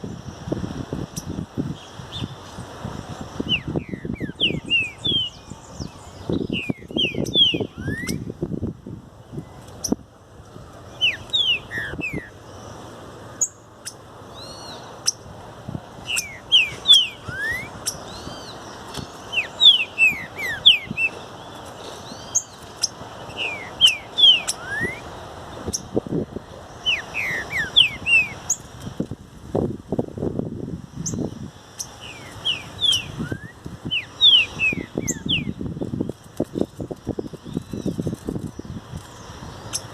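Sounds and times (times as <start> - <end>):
bird singing whistled phrases: 3.5 - 8.3, 11.0 - 12.3, 16.0 - 18.5, 19.3 - 21.2, 23.3 - 25.1, 26.8 - 28.6, 32.1 - 35.6
fainter bird calls: 10.8 - 15.2, 16.0 - 26.0, 26.6 - 28.8, 31.0 - 39.9.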